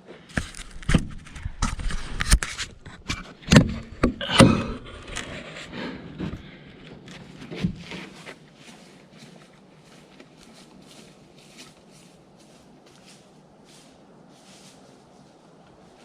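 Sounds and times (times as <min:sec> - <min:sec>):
wood knocking and scraping: 0:00.3 - 0:08.8.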